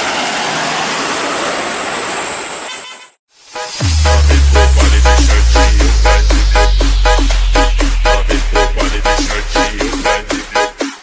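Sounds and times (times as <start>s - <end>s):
electronic dance music: 3.3s - 11.0s
heavy held bass: 3.5s - 11.0s
chopped pitched sound: 3.6s - 11.0s.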